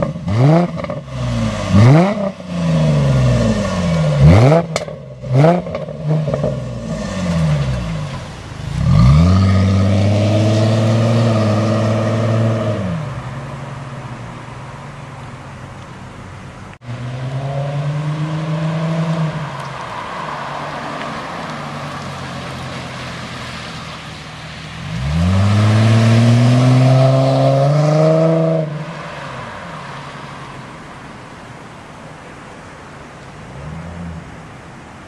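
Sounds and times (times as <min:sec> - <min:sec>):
car engine revving: 0:00.0 - 0:14.3, 0:16.8 - 0:29.6.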